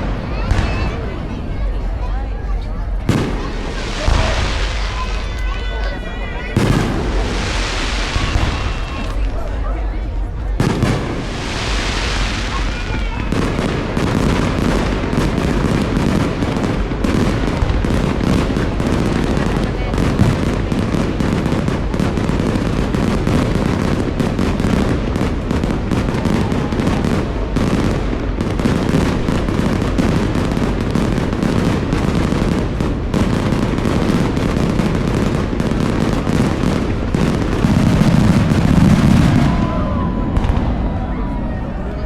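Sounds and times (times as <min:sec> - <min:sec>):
fireworks cracking and booming: 0:00.0 - 0:42.0.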